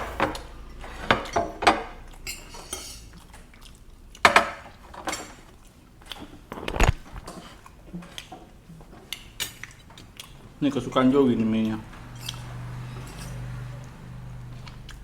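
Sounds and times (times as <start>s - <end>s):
utensils clinking on a plate: 0.0s - 3.5s, 11.2s - 14.0s.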